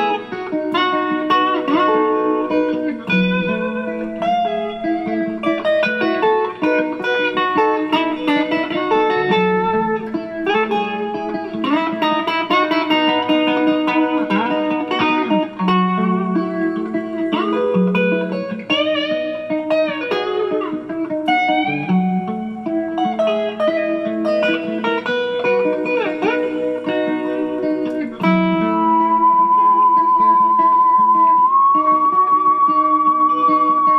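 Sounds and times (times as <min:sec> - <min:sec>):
electric guitar with string bends: 0:00.0 - 0:33.9.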